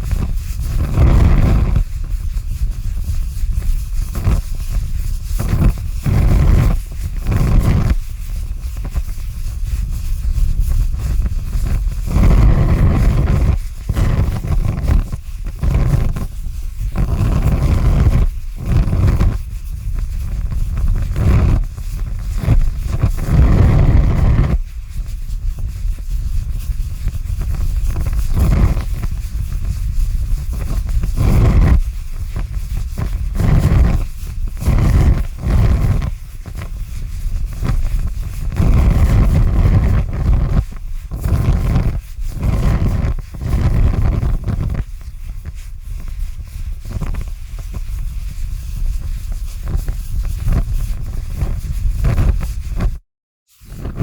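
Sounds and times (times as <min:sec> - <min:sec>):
large fire rumbling and whooshing: 0:38.0 - 0:44.7.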